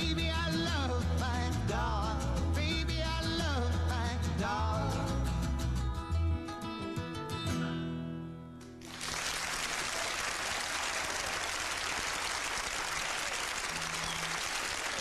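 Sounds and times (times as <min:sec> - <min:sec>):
audience applause: 0:08.8 - 0:15.0.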